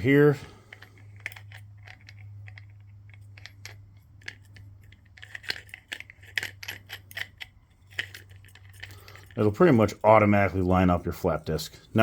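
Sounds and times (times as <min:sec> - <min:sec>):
metallic clicks of nut spinning: 0:00.7 - 0:10.0.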